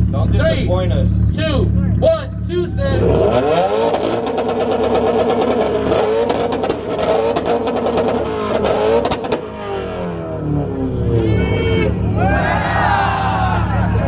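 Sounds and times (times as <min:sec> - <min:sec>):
car engine on rev limiter popping: 0:03.1 - 0:09.6.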